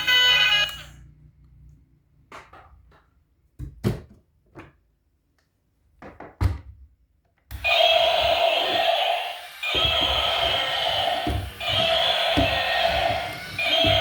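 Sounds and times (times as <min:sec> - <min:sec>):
toy electronic sound: 0:00.0 - 0:01.0, 0:07.5 - 0:14.0
plastic toys knocking: 0:09.7 - 0:14.0.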